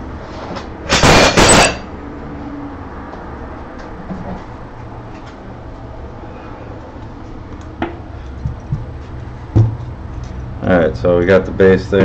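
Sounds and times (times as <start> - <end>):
steady low hum: 1.4 - 12.0
sharp knock: 9.6 - 9.9.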